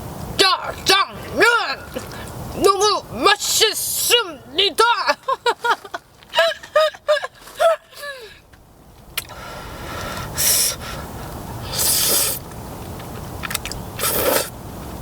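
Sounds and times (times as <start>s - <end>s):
noodles being slurped: 11.7s - 12.4s, 13.4s - 14.5s.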